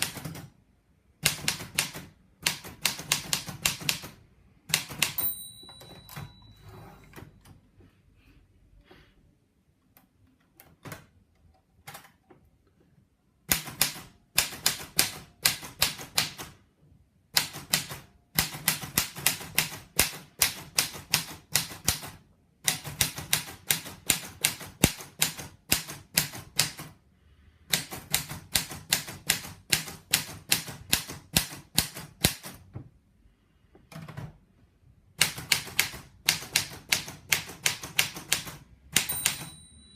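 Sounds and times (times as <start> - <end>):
manual typewriter key strikes: 1.2 - 6.4, 35.2 - 39.8
typewriter bell ring: 5.0 - 7.4, 39.0 - 39.9.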